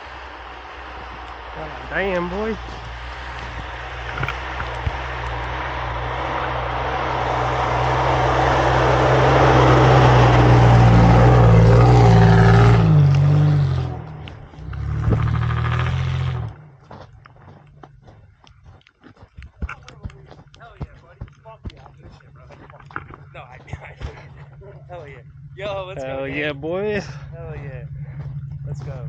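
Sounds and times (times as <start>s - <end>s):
truck engine revving: 0.0s - 18.5s, 19.7s - 29.0s.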